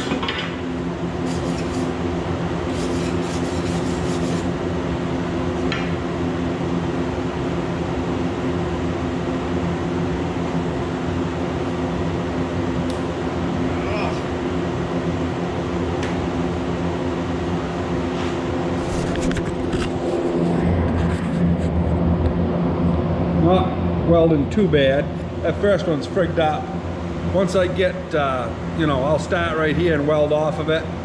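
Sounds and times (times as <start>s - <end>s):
welder humming: 0.6s - 5.1s
welding arc hissing: 1.2s - 2.0s, 2.7s - 4.5s.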